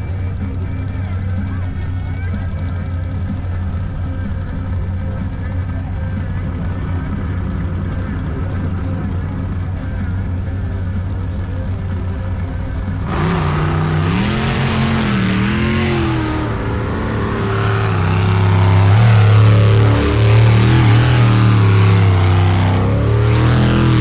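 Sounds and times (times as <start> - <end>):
boat engine revving: 13.0 - 24.0.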